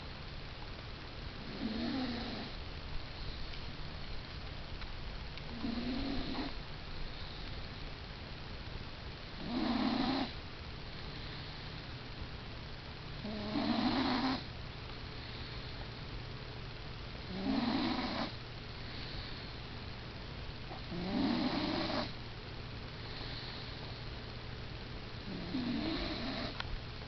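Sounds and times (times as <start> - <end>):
person snoring: 1.4 - 2.6, 5.5 - 6.6, 9.4 - 10.3, 13.2 - 14.4, 17.3 - 18.3, 20.7 - 22.1, 25.3 - 26.6.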